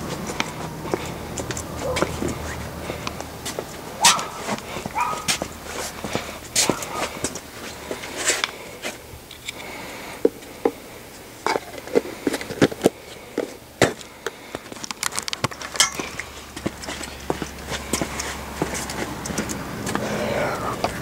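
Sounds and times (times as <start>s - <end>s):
hand tools clinking: 14.7s - 21.0s.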